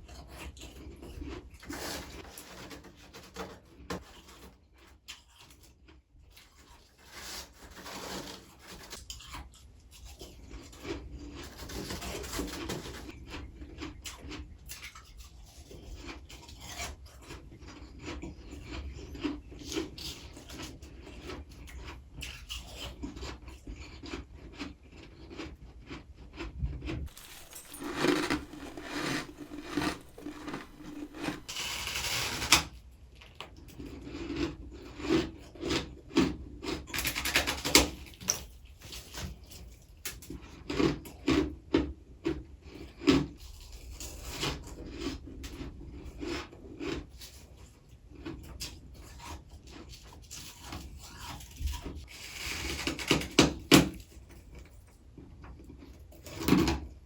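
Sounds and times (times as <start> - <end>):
frost scraping and crunching: 23.2 - 39.3.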